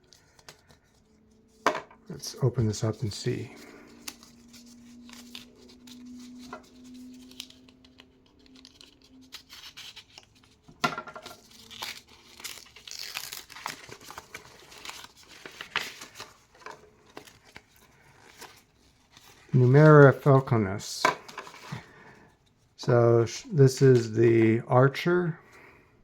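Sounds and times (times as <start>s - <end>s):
cardboard and plastic bag tearing: 11.4s - 16.4s.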